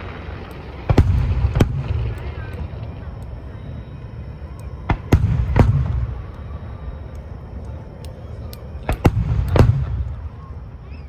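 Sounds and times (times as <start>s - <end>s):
sharp firework bangs: 0.0s - 3.2s, 4.8s - 6.3s, 8.8s - 10.4s
distant fireworks rumble: 0.0s - 11.0s.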